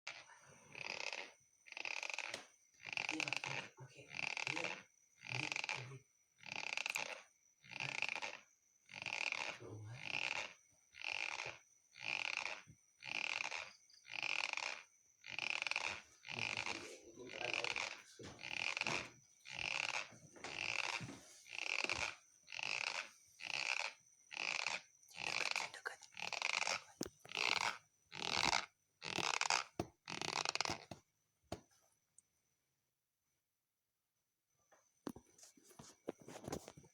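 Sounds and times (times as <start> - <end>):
person snoring: 14.2 - 31.0.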